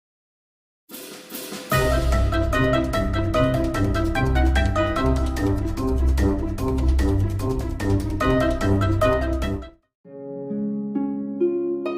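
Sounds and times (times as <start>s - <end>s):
background music with beat: 1.0s - 9.7s
pulsing bass line: 1.7s - 9.7s.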